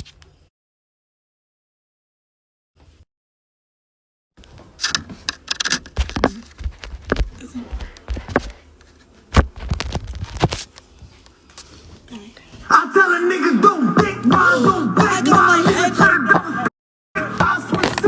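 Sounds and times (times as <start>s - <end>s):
sharp clicks and knocks: 4.4s - 7.4s.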